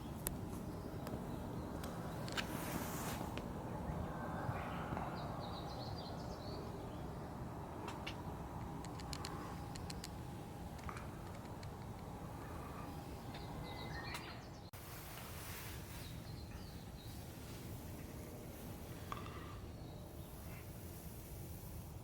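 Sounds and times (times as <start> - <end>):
birds chirping: 0.0 - 14.8, 15.9 - 20.9
low background noise: 0.0 - 22.0
light clicks: 7.8 - 12.1.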